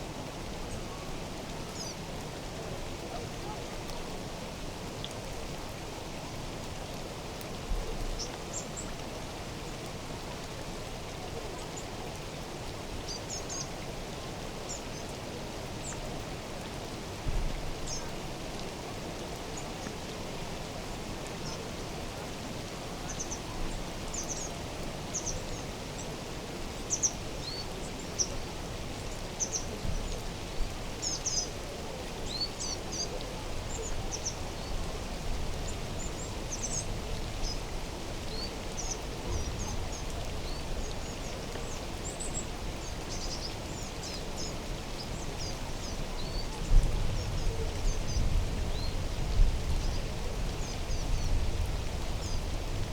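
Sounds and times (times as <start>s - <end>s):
low outdoor background noise: 0.0s - 52.9s
small birds chirping: 29.0s - 31.6s, 32.2s - 34.8s, 35.6s - 49.0s.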